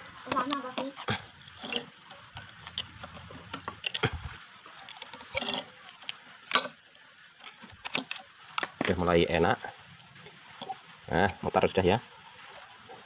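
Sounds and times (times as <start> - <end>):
metal tool scraping metal: 5.2 - 5.7.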